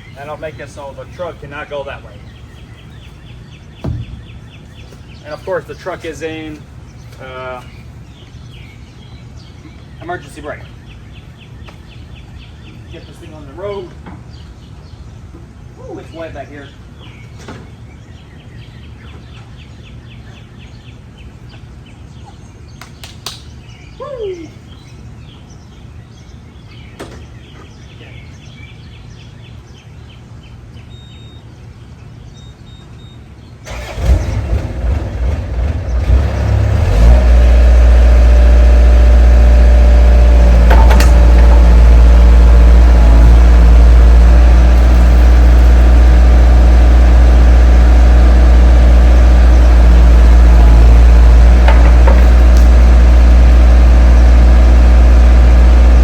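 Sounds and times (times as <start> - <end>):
starter cranking diesel engine: 33.6 - 56.0
diesel engine idling: 33.7 - 56.0.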